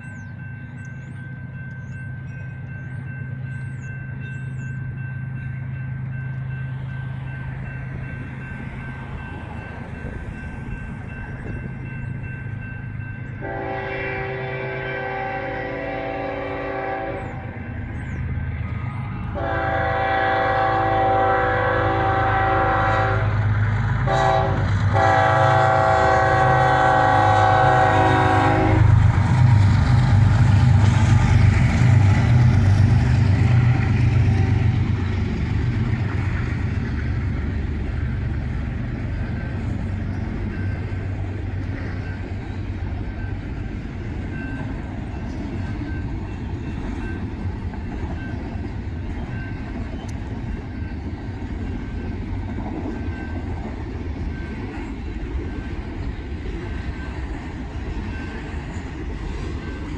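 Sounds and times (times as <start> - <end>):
locomotive engine rumble: 0.0 - 59.9
train cars rolling: 0.0 - 59.9
train air horn: 13.4 - 17.6, 19.3 - 31.4, 33.4 - 35.0.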